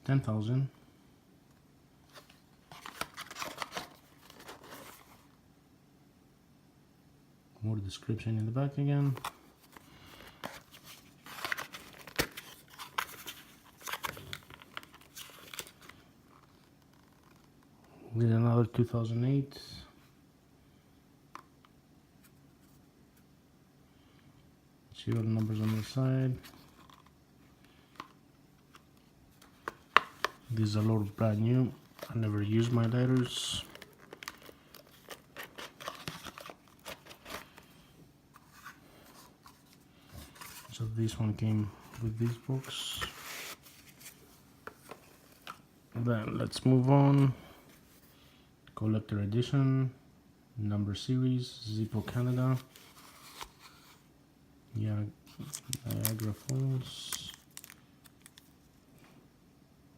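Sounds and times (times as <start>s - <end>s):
packaging rustling: 2.1s - 5.3s, 9.0s - 17.5s, 27.9s - 40.9s, 41.8s - 45.6s, 52.0s - 54.0s, 55.3s - 58.7s.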